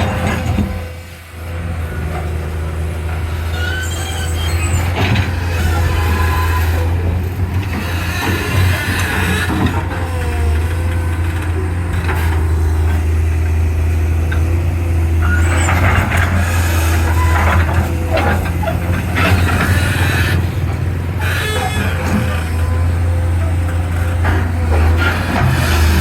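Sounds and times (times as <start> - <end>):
excavator diesel engine running: 0.0 - 26.0
metal clanks and scraping: 15.2 - 26.0.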